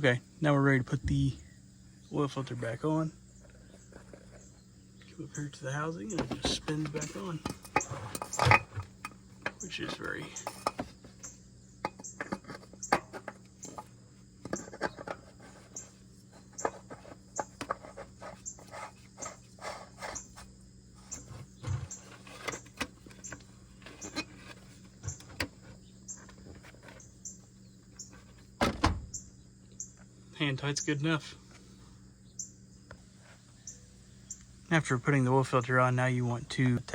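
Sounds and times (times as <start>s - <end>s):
low steady hum: 0.0s - 36.9s
oil filter clicks and knocks: 10.4s - 15.8s.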